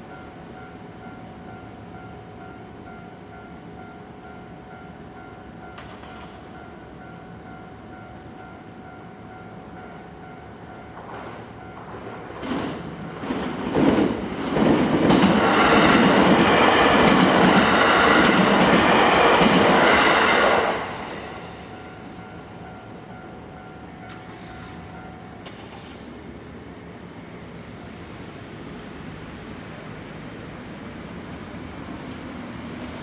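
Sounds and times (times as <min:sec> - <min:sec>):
train wheels clattering over rails: 0:11.0 - 0:21.5, 0:25.4 - 0:26.2.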